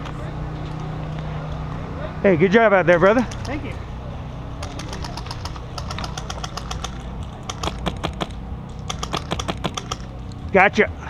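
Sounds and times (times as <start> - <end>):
airsoft guns firing: 4.6 - 10.1.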